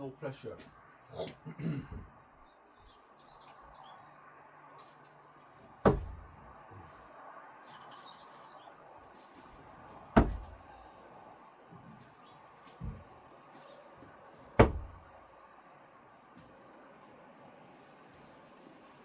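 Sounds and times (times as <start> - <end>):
birds chirping: 0.0 - 5.0, 5.7 - 11.1, 11.7 - 15.0
screwdrivers hitting target: 5.9 - 6.3, 10.2 - 10.6, 14.6 - 15.0.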